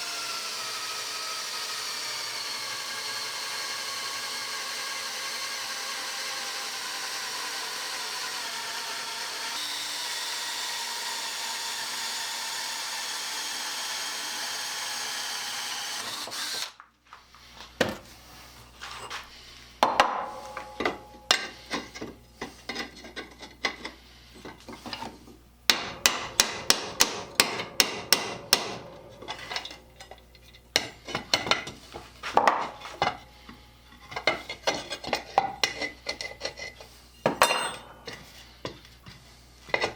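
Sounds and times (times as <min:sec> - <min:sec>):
power tool whining: 0:00.0 - 0:16.8.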